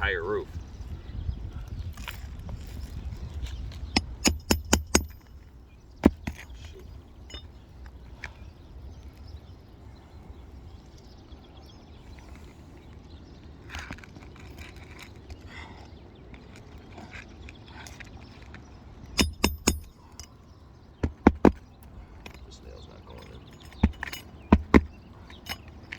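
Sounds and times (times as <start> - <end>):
hammer striking a nail: 4.0 - 5.3, 19.2 - 20.3, 21.0 - 21.6, 23.7 - 24.9.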